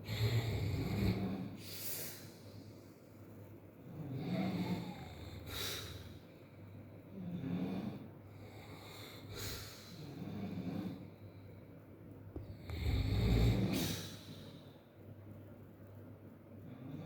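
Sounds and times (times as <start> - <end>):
person snoring: 3.9 - 6.1, 12.6 - 14.2.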